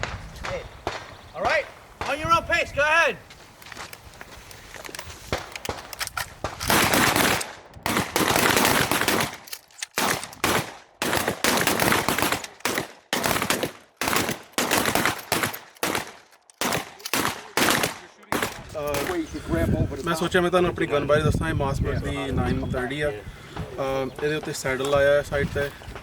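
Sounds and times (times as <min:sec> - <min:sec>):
shotguns firing: 0:00.0 - 0:01.2, 0:05.2 - 0:19.3.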